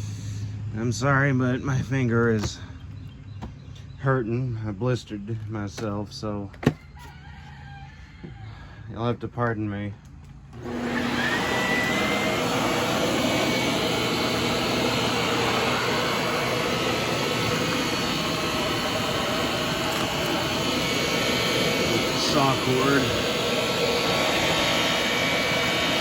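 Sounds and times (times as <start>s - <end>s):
vacuum cleaner running: 10.6s - 26.0s.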